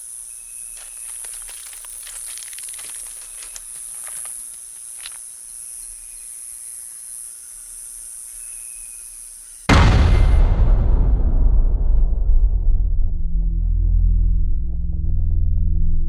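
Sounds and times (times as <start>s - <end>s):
insects buzzing: 0.0s - 9.7s.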